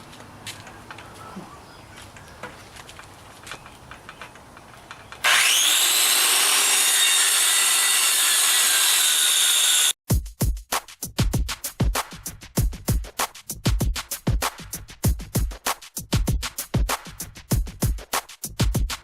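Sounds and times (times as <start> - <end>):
circular saw whining: 5.2 - 10.0.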